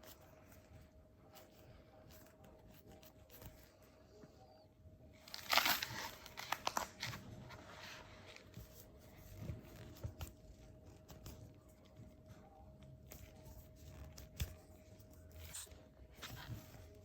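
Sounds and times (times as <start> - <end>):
plastic crinkling: 5.2 - 12.3.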